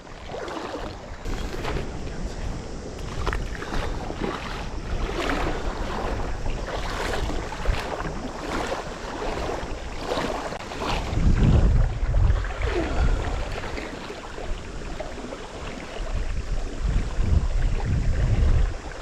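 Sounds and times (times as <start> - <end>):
river water rushing: 0.0 - 11.3, 12.5 - 16.2
wind buffeting the microphone: 0.0 - 19.0.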